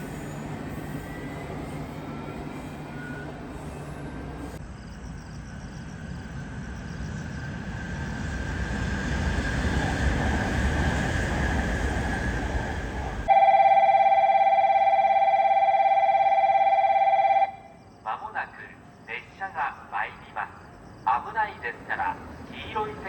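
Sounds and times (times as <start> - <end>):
train rumble: 0.0 - 13.4, 18.2 - 23.0
electronic platform bell ringing: 13.3 - 17.7.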